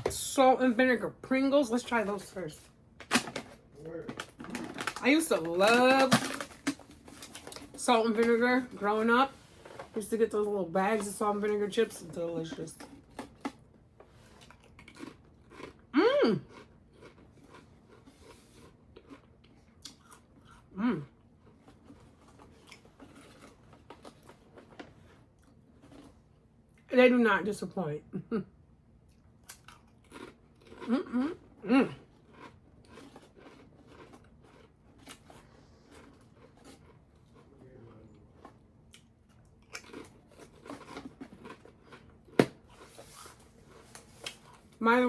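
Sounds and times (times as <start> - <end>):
chewing crisps crunching: 3.1 - 9.0, 12.5 - 26.8, 29.0 - 31.2, 31.9 - 44.8
person humming mm: 16.0 - 16.4.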